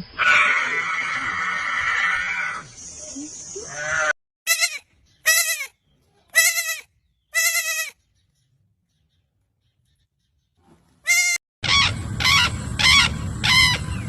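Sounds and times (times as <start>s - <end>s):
goat bleating: 3.7s - 5.7s, 6.3s - 8.0s, 11.0s - 11.4s.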